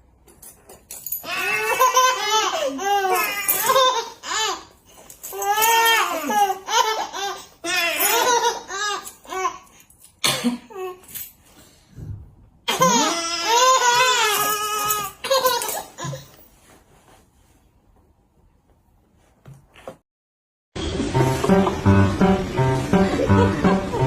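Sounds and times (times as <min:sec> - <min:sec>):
baby laughing: 0:01.3 - 0:04.6, 0:06.0 - 0:09.6, 0:12.7 - 0:16.3.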